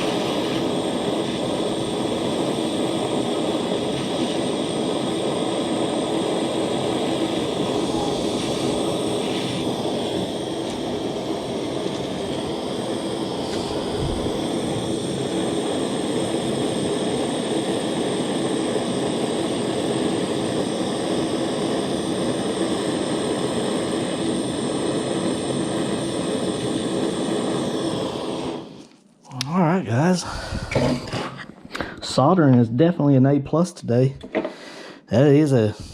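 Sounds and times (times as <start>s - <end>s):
gas torch flame rushing: 0.0s - 32.7s.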